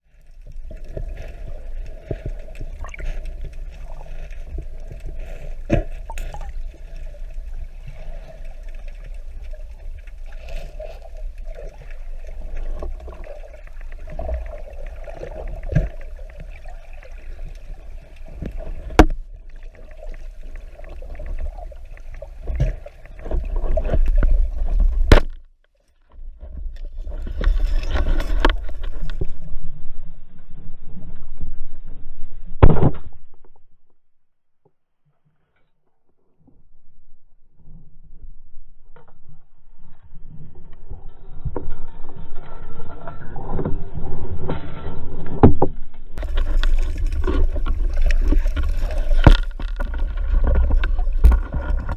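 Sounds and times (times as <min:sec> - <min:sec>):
muffled underwater rushing: 0:00.0 - 0:25.2, 0:40.4 - 0:51.9.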